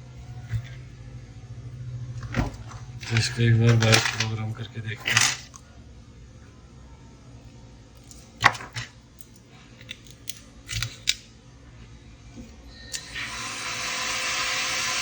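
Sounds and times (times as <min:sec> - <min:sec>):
hot air station hissing: 0:12.8 - 0:15.0.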